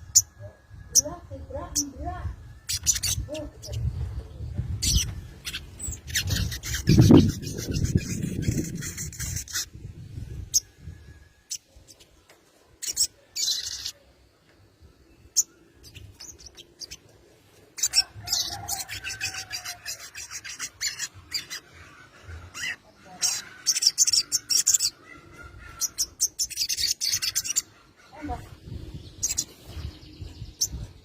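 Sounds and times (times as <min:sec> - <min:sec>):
bird harsh rasping chatter: 0:02.6 - 0:03.9, 0:04.7 - 0:09.8, 0:12.8 - 0:14.0, 0:17.8 - 0:29.5.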